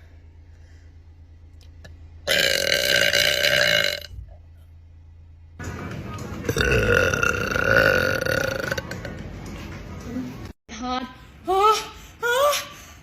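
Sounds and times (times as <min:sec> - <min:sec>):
woman burping loudly: 0:02.3 - 0:04.1, 0:06.5 - 0:08.9.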